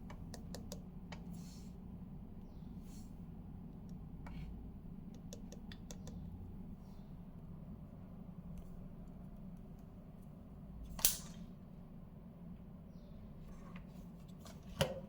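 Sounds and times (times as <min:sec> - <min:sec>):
faint low hum: 0:00.0 - 0:15.0
sharp click: 0:11.0 - 0:11.5.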